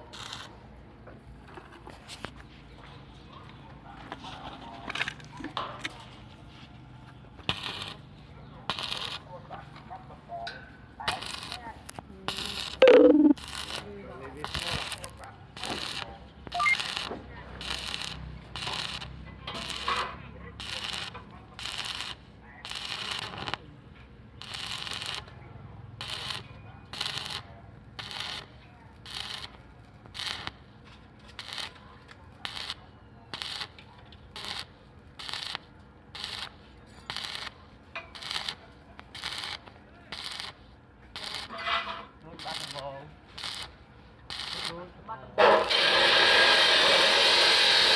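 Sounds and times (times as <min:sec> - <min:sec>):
welding arc crackling: 0:07.5 - 0:08.1, 0:08.7 - 0:09.2, 0:11.1 - 0:20.0, 0:20.6 - 0:23.6, 0:24.4 - 0:25.3, 0:26.0 - 0:30.6, 0:31.3 - 0:31.8, 0:32.4 - 0:41.6, 0:42.4 - 0:45.0, 0:45.6 - 0:47.9.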